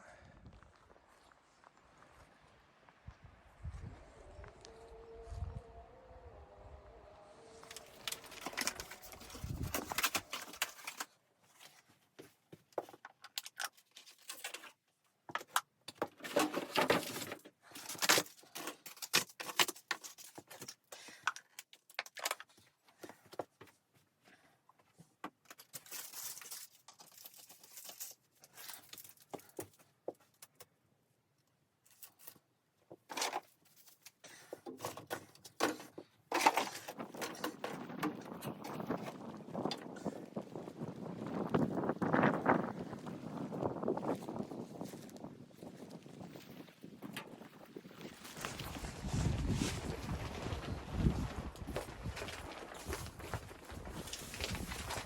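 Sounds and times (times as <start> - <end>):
rustling and crinkling: 7.6 - 30.8, 31.8 - 55.0.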